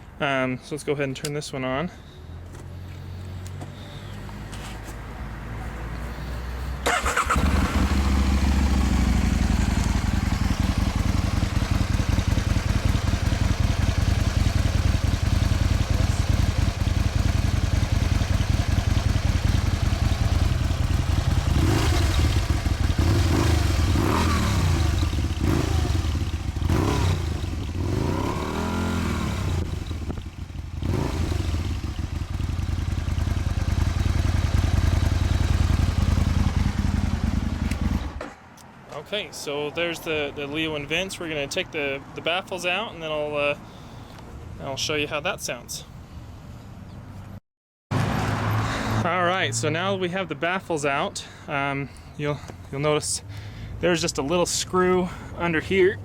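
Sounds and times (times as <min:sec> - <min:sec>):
motorcycle engine revving: 0:06.8 - 0:38.3
motorcycle engine idling: 0:06.9 - 0:38.3.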